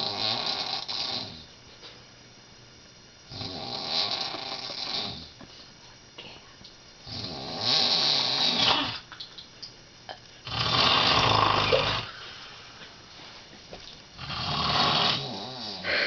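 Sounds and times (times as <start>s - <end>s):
woman snoring loudly: 0.0s - 1.5s, 3.3s - 5.3s, 7.1s - 9.0s, 10.4s - 12.2s, 14.2s - 16.0s
quiet breathing: 12.0s - 13.5s, 15.2s - 16.0s.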